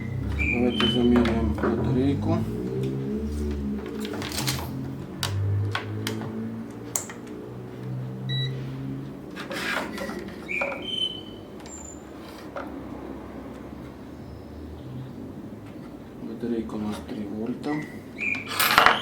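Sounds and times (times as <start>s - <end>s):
short electronic beep: 0.0s - 1.1s
multimeter probes clicking and tapping: 3.8s - 7.4s.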